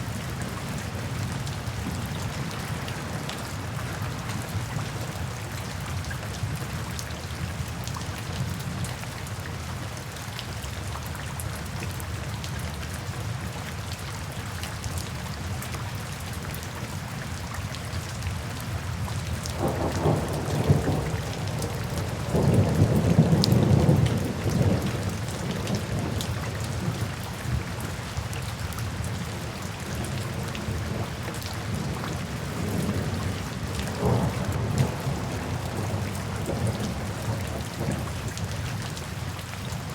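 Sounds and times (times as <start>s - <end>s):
steady rain falling: 0.0s - 39.9s
thunder rumbling: 19.6s - 26.2s, 32.5s - 38.4s.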